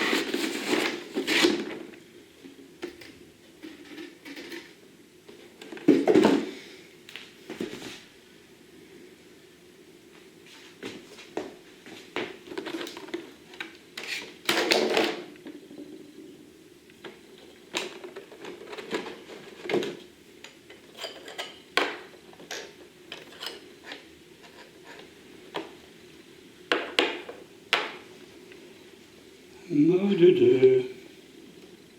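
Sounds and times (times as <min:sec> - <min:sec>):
plastic clicks and clatter: 0:16.9 - 0:25.7.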